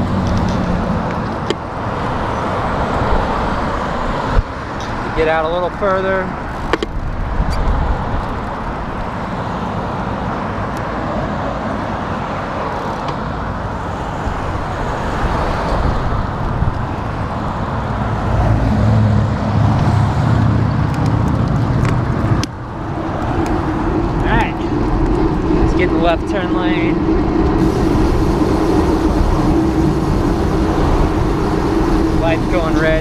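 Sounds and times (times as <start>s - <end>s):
cars passing: 0.0s - 33.0s
deep engine rumble: 18.3s - 33.0s.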